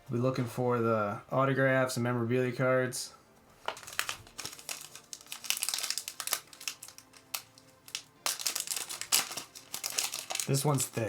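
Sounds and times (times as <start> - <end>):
plastic packaging crinkling: 3.6 - 11.0.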